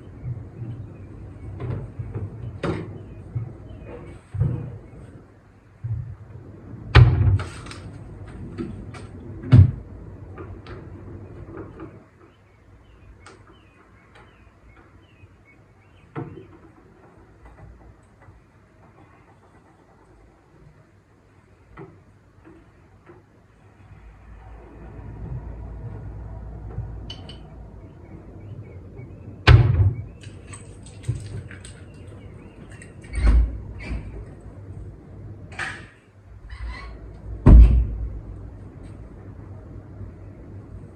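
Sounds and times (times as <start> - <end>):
low steady rumble: 0.0 - 40.9
heavy thuds of door shutting: 9.4 - 9.9, 29.4 - 30.1, 37.4 - 38.2
light clicks and rattles: 30.2 - 34.5.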